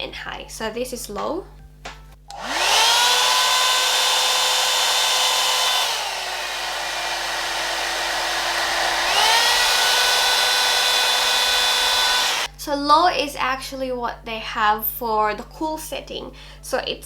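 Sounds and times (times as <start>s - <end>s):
hot air brush fan whining: 2.3s - 12.5s.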